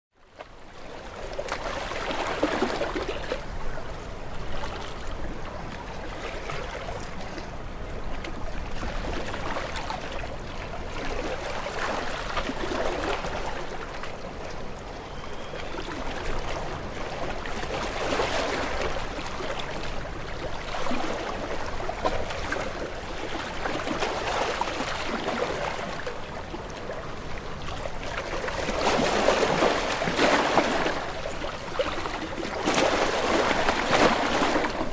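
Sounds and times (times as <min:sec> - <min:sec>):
sea waves washing onto shore: 0:15.8 - 0:34.9.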